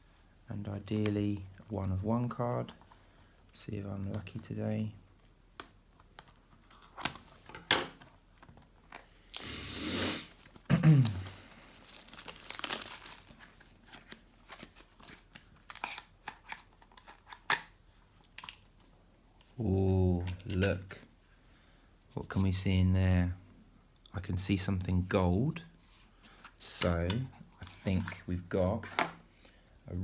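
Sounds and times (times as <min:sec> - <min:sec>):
cellophane torn and crinkled: 0:10.3 - 0:17.7.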